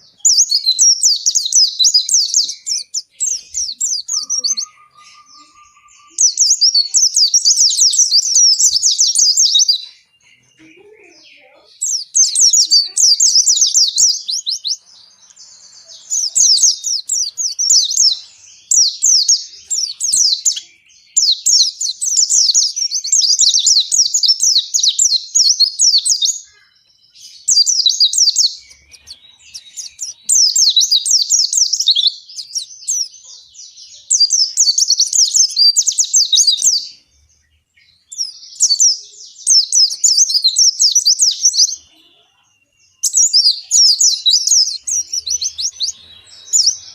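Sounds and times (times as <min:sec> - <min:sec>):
bird singing chattering song: 0:00.0 - 0:46.9.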